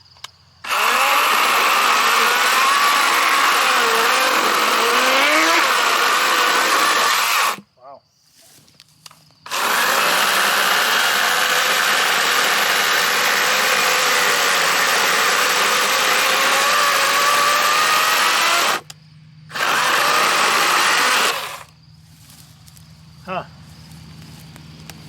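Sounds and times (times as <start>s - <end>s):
battery chainsaw cutting log: 0.6s - 7.6s, 9.5s - 18.9s, 19.5s - 21.7s.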